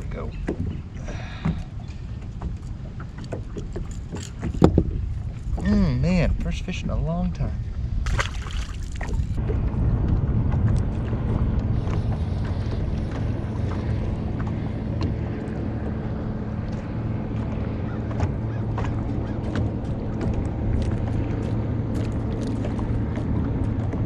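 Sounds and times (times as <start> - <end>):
boat motor humming: 10.6 - 24.0.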